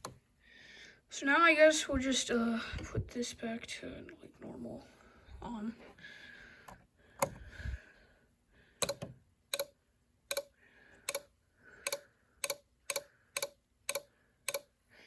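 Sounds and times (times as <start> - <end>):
electronic circuit clicking: 8.8 - 10.5, 11.9 - 14.7.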